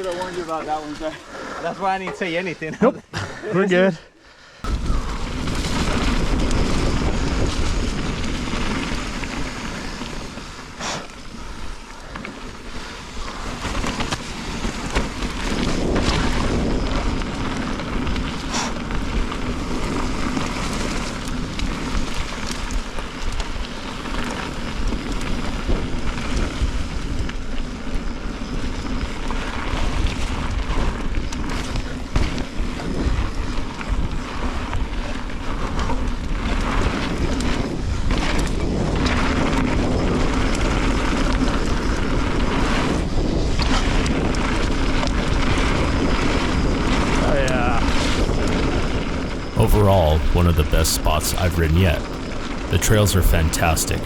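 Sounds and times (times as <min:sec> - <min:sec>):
mountain bike rattle and tyre noise: 0:00.0 - 0:01.2.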